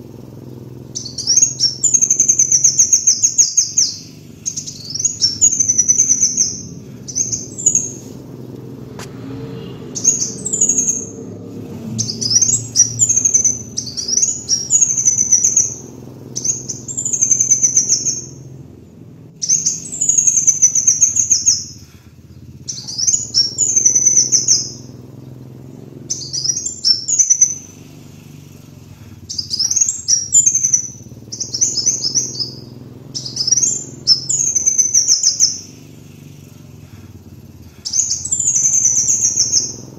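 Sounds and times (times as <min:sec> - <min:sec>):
faint low hum: 0:00.0 - 0:39.9
sunbird twittering: 0:00.0 - 0:39.9.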